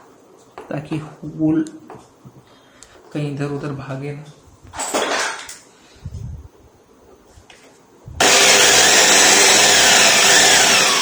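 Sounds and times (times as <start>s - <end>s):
electric drill boring into wood: 8.2s - 11.0s.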